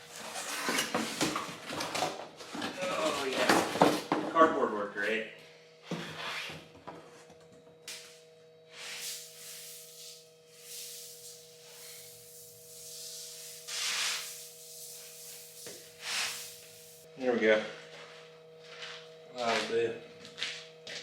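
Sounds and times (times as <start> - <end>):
faint steady hum: 1.2 - 21.0
scraping and rubbing: 8.8 - 17.0.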